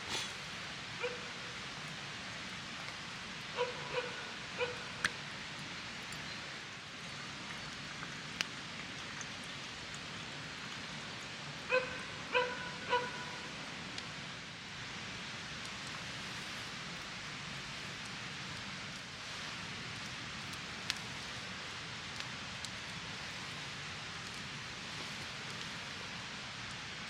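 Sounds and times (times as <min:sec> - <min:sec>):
background hiss: 0:00.0 - 0:27.0
animal calling: 0:03.6 - 0:04.9, 0:11.7 - 0:13.4.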